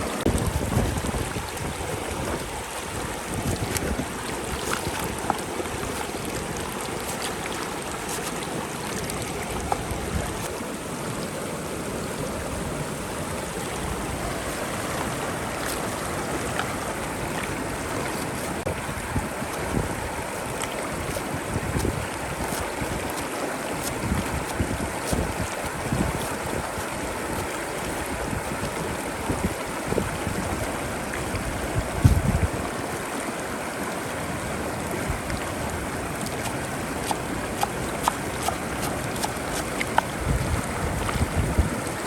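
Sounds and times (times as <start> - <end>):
wind buffeting microphone: 0.0 - 6.8, 18.6 - 32.8, 34.9 - 42.0.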